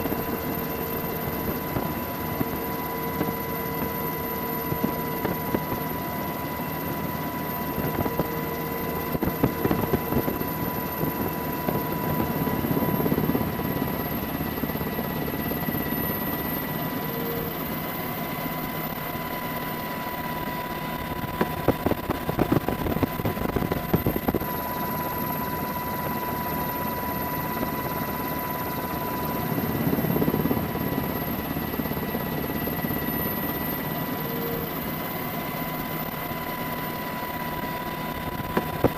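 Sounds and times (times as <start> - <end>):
helicopter engine and rotor: 0.0 - 38.9.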